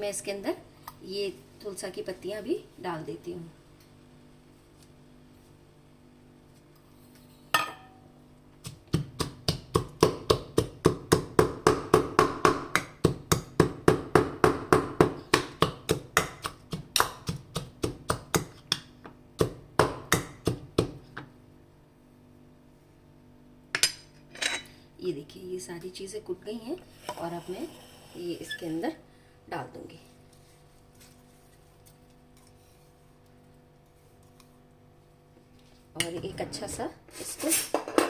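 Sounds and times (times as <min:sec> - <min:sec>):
pestle pounding in mortar: 0:08.6 - 0:21.0.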